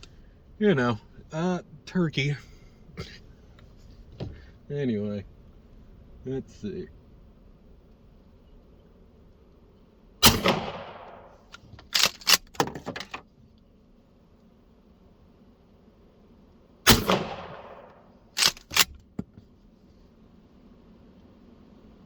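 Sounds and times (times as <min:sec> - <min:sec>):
shotgun shots: 0:10.2 - 0:12.5, 0:16.9 - 0:18.9.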